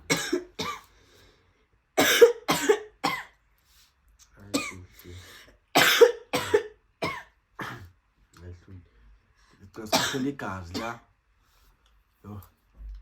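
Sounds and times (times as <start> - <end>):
person coughing hard: 0.0 - 0.9, 2.0 - 3.3, 4.5 - 4.9, 5.8 - 7.9, 9.9 - 11.0.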